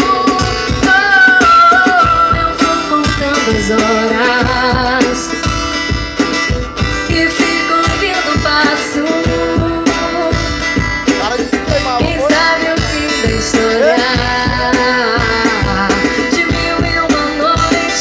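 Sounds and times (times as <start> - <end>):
guitar: 0.0 - 18.0
steady drum beat: 0.0 - 18.0
person singing: 11.3 - 18.0.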